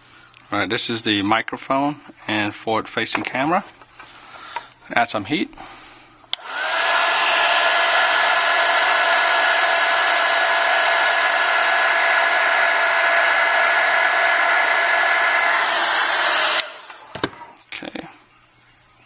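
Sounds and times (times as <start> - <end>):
hot-air blower whining: 6.3 - 17.7.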